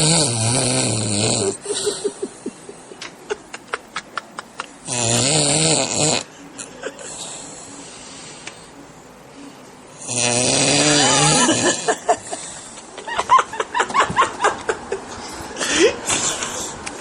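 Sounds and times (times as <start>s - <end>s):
man snoring: 0.0s - 2.3s, 4.8s - 8.4s, 10.0s - 12.5s
stifled laughter: 1.2s - 5.2s, 6.2s - 7.6s, 10.6s - 16.7s.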